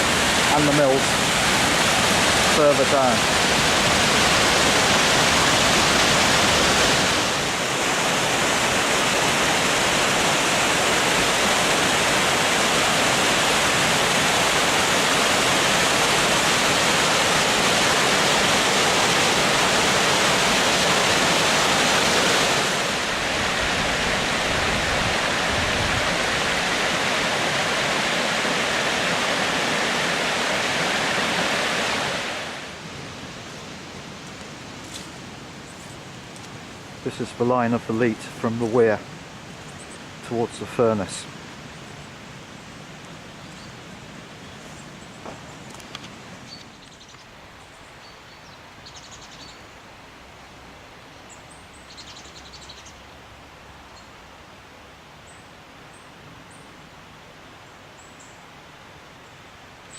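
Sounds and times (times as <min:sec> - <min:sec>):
water rushing over a weir: 0:00.0 - 0:33.1.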